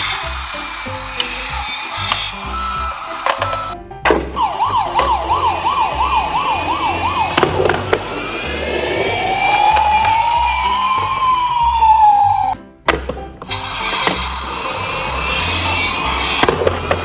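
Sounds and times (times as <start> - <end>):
background music with steady beat: 0.0 - 17.0
emergency siren: 4.4 - 12.6, 13.7 - 17.0.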